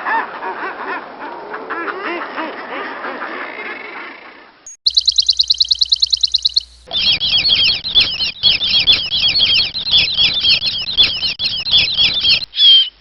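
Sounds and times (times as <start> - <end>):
bird high trill: 4.7 - 12.9
birds quick high chirps: 4.7 - 13.0.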